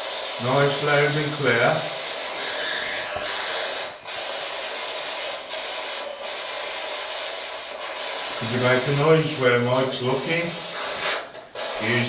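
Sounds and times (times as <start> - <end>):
radio static hiss: 3.0 - 12.0.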